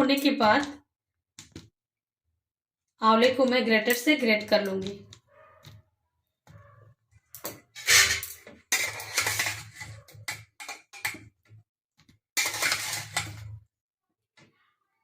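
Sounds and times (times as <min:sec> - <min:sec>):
metal utensil scraping cooking pot: 0:07.4 - 0:11.3, 0:12.4 - 0:13.6.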